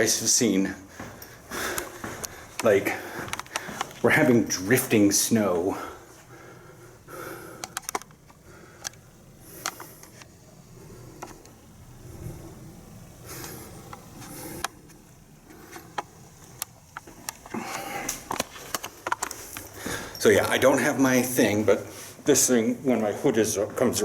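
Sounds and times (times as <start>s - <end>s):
sharp clicks and knocks: 7.6s - 9.0s.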